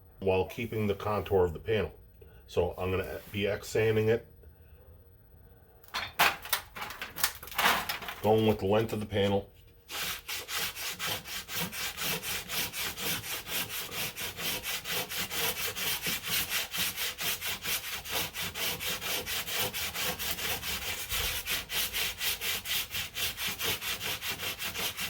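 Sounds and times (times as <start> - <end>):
sandpaper rubbing on filler: 9.9 - 25.0.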